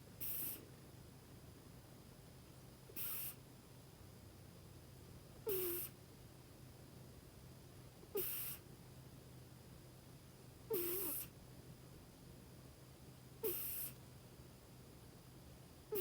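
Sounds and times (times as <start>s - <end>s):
cat snoring with squeaks: 0.2s - 0.7s, 2.9s - 3.4s, 5.4s - 6.0s, 8.1s - 8.7s, 10.7s - 11.3s, 13.4s - 14.0s.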